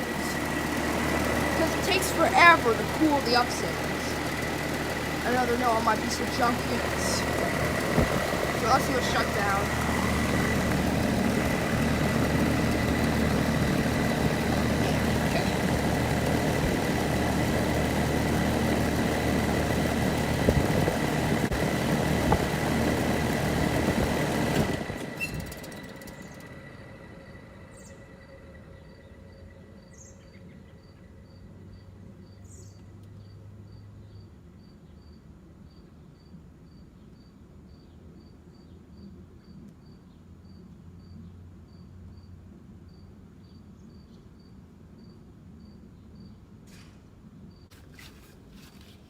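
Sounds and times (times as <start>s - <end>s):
air conditioner unit humming: 0.0s - 31.7s
condenser fan winding down: 0.0s - 33.2s
crickets chirping: 25.2s - 46.4s.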